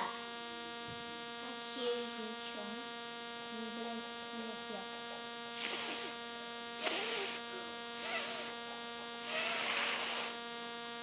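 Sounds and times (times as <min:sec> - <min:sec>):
electrical mains hum: 0:00.0 - 0:11.0
short hissing noises: 0:05.6 - 0:06.2, 0:06.8 - 0:08.6, 0:09.2 - 0:10.4.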